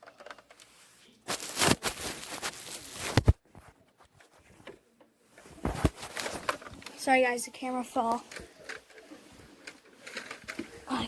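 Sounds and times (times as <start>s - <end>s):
camera handling rustling and scraping: 1.3s - 4.8s, 5.4s - 7.0s.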